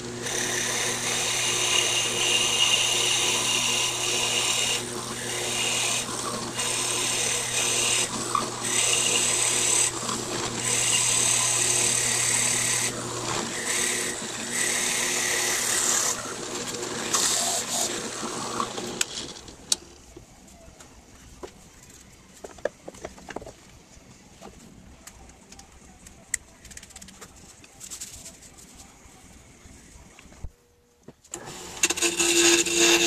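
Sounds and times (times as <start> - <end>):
lathe motor hum: 0.0 - 19.4, 31.3 - 33.0.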